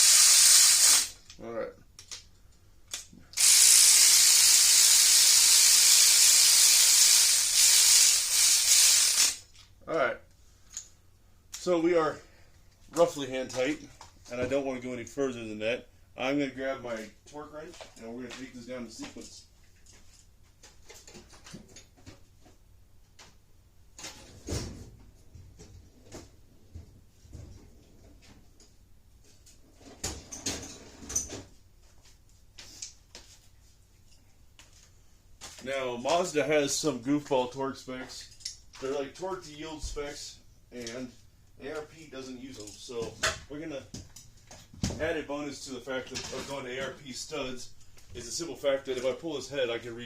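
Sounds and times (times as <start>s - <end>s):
loud steady hiss: 0.0s - 1.3s, 3.4s - 9.5s.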